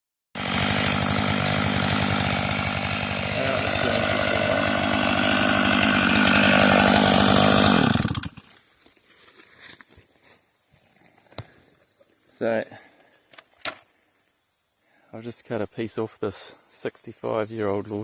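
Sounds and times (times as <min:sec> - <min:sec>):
chainsaw running: 0:00.4 - 0:08.6.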